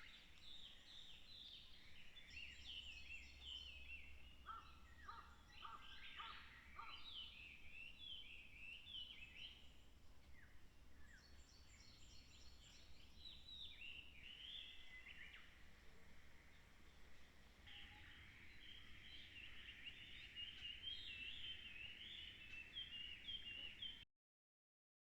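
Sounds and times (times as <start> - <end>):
birds chirping and whistling: 17.8 - 24.0.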